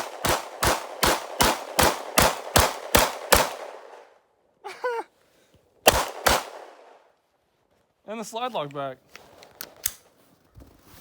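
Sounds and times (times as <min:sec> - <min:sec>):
pistol shots: 0:00.0 - 0:04.1, 0:05.8 - 0:07.0.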